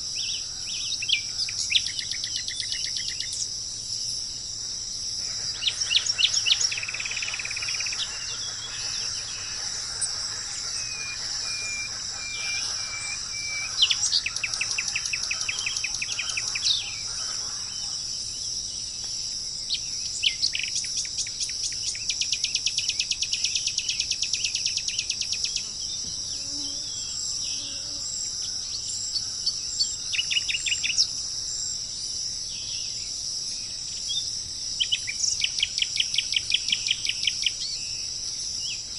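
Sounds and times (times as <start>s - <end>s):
high-pitched insect drone: 2.1s - 18.9s
birds chirping: 5.2s - 19.1s.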